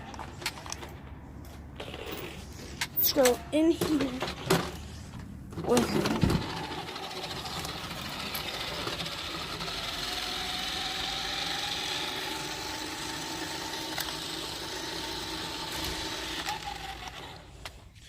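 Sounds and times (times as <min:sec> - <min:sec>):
toy car motor whirring: 0:05.7 - 0:17.8.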